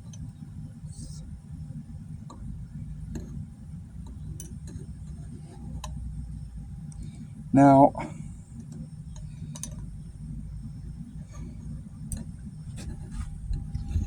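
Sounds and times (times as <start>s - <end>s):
steady low hum: 0.0s - 14.0s
light clicks and taps: 2.2s - 6.1s, 8.6s - 10.0s, 11.3s - 14.0s.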